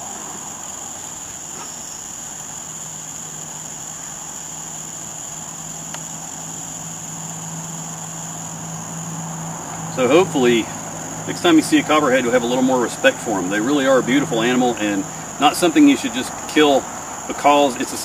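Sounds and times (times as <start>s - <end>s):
insects chirping: 0.0s - 18.0s
low steady hum: 0.0s - 18.0s.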